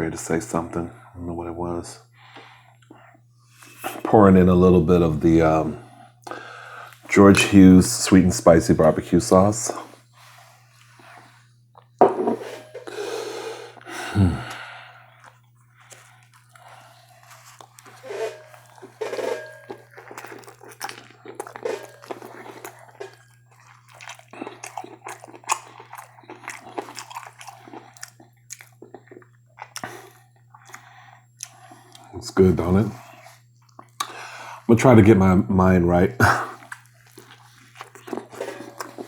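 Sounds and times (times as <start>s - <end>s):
low electrical hum: 0.0s - 39.0s
person chewing food: 12.6s - 32.1s, 33.0s - 34.4s, 36.4s - 39.0s
handling noises: 17.4s - 20.5s.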